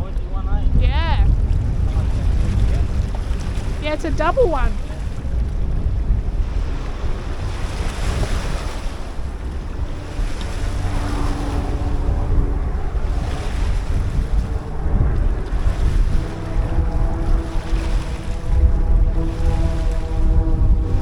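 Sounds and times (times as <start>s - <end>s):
surf washing: 0.0s - 21.0s
wind buffeting microphone: 0.0s - 21.0s
faint steady drone: 5.6s - 21.0s.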